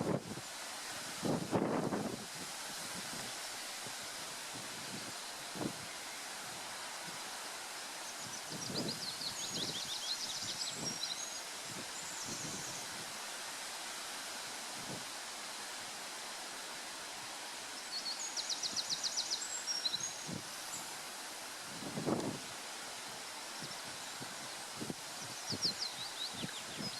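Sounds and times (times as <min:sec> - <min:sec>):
steady outdoor hiss: 0:00.0 - 0:26.9
songbird singing with trill: 0:08.2 - 0:11.4, 0:17.9 - 0:20.3, 0:25.3 - 0:26.9.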